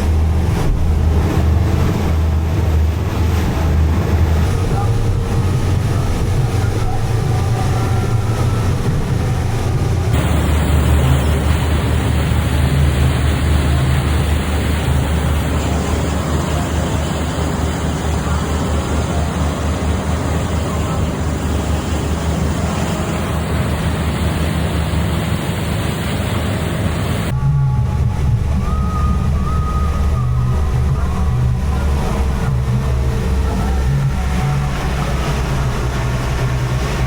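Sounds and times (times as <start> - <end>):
boat engine droning: 0.0 - 37.0
rushing water: 0.0 - 37.0
wind on microphone: 0.0 - 37.0.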